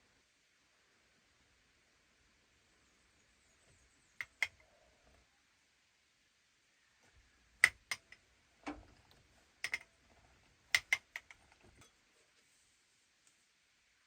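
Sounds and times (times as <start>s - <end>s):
sharp clicks and light knocks: 4.2s - 4.6s, 7.6s - 12.0s.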